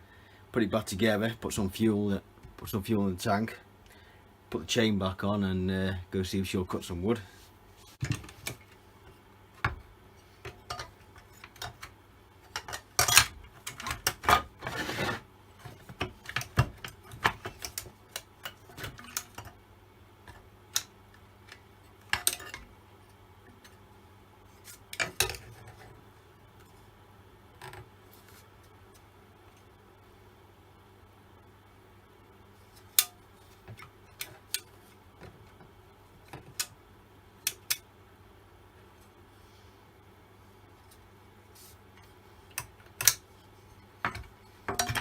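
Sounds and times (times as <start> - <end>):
metal tools clinking and knocking: 44.1 - 45.0.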